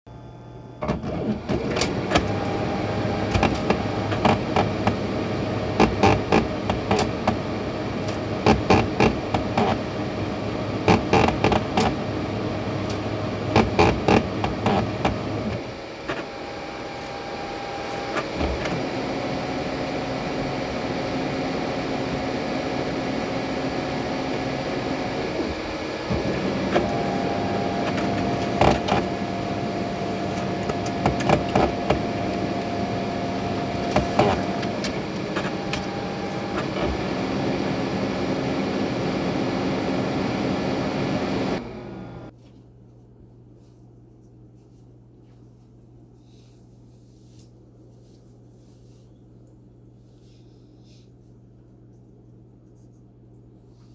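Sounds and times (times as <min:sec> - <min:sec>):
printer whirring: 0:00.3 - 0:42.3
printer clicks and knocks: 0:00.8 - 0:05.0, 0:12.9 - 0:15.2, 0:26.2 - 0:32.8, 0:33.4 - 0:35.9.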